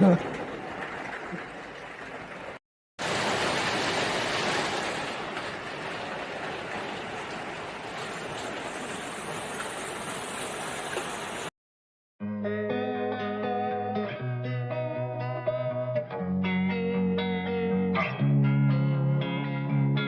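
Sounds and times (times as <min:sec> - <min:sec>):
heavy falling water rushing: 0:00.0 - 0:11.5
electric guitar music: 0:12.2 - 0:20.0.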